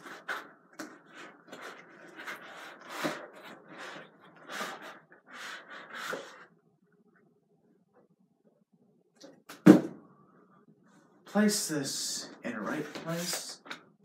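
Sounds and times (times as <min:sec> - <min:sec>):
packaging rustling and scraping: 0:00.0 - 0:06.5.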